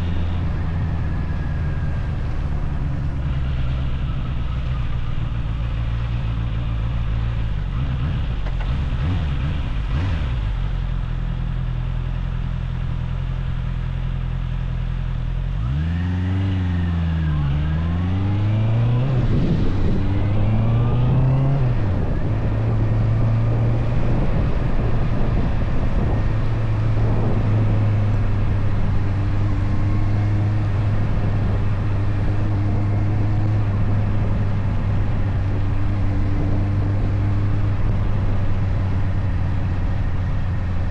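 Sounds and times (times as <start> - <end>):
motorcycle engine revving: 5.7 - 11.1, 15.2 - 40.9.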